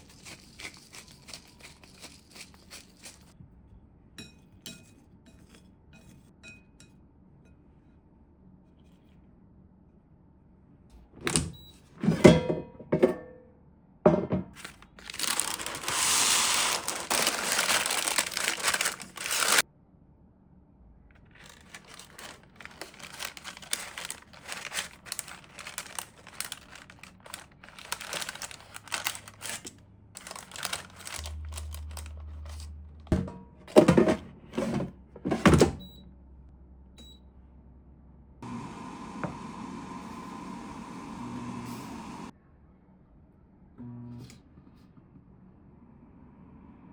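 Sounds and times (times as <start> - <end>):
light crinkling and rustling: 14.6 - 19.6, 21.2 - 32.7.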